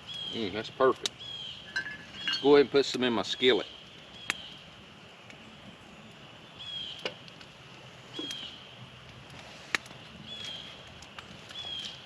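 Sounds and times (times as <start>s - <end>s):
bird chirping: 0.0s - 2.6s, 5.4s - 7.0s, 8.1s - 8.8s, 11.5s - 12.0s.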